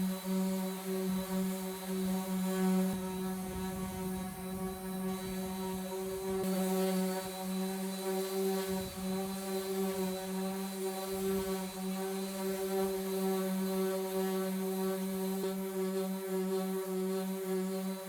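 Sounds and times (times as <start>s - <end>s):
power sander running: 0.0s - 18.0s.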